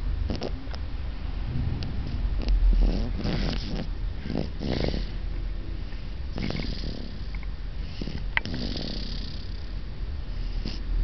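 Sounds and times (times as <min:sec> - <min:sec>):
baby snoring: 0:02.4 - 0:05.2, 0:06.4 - 0:07.3, 0:07.9 - 0:09.6.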